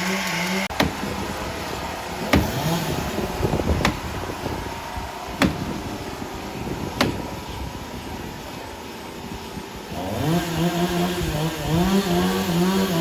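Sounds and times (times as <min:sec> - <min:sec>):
sharp knocks: 0:00.7 - 0:04.6, 0:05.3 - 0:07.5.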